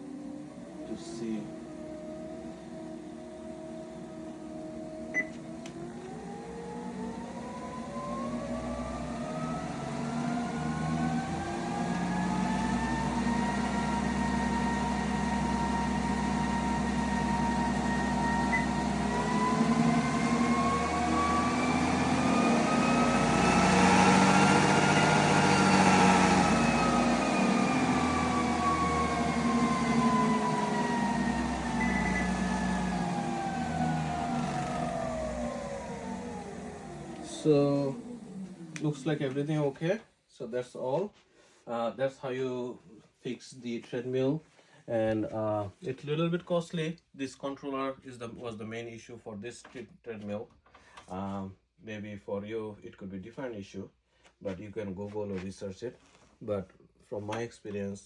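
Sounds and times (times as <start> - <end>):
treadmill motor whine: 0.0 - 39.8.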